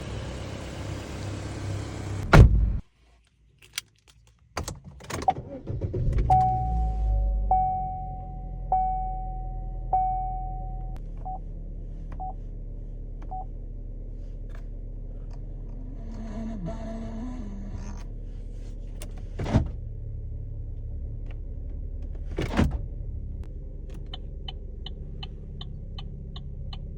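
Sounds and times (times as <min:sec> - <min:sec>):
car door shutting: 0:02.2 - 0:02.7, 0:19.0 - 0:19.8, 0:22.0 - 0:22.9
car engine idling: 0:05.7 - 0:26.9
short beeps: 0:06.3 - 0:11.4
dashboard chime: 0:06.4 - 0:11.0.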